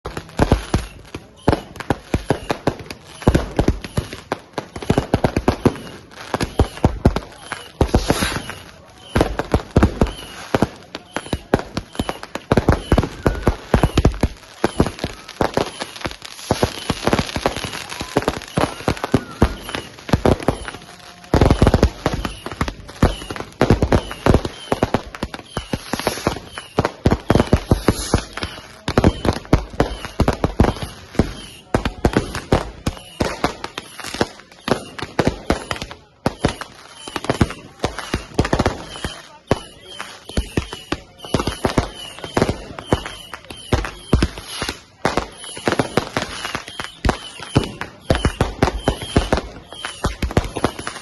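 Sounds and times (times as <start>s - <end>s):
firecrackers banging and crackling: 0.0s - 51.0s
fireworks whistling: 0.0s - 51.0s.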